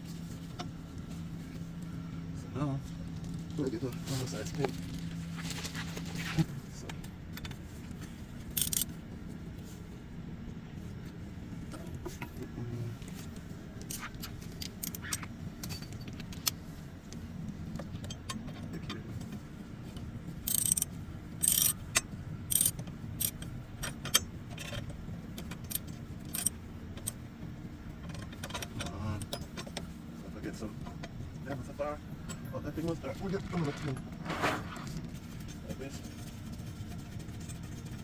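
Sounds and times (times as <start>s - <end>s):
steady low hum: 0.0s - 38.0s
metal tools clinking: 8.6s - 8.9s, 26.3s - 26.5s.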